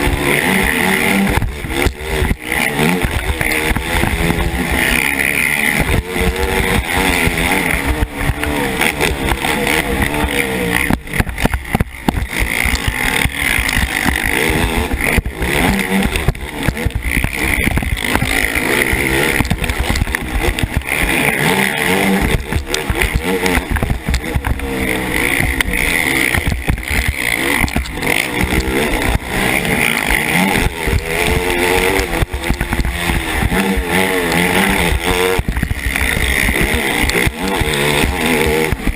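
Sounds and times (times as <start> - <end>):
quad engine revving: 0.0 - 38.9
wind rumble on microphone: 9.9 - 20.9.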